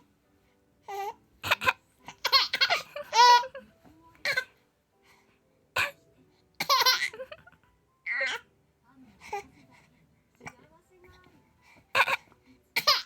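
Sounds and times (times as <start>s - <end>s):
baby laughing: 0.9s - 3.6s, 6.6s - 8.4s, 12.8s - 13.0s.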